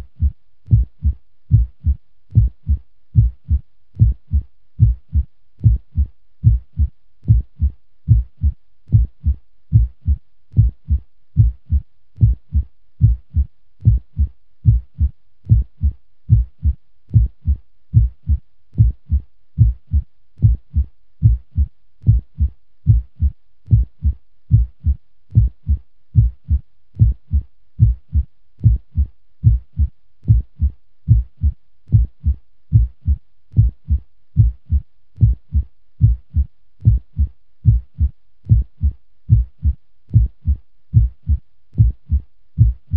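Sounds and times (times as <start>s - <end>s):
heartbeat thumps: 0.0s - 42.9s.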